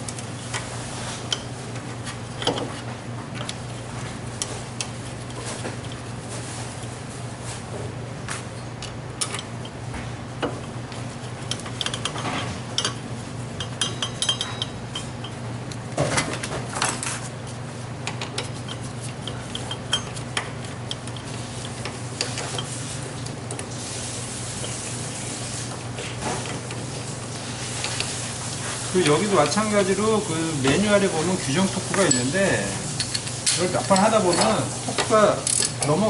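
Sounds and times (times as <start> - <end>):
metallic clinks of tools and parts: 13.8 - 15.1.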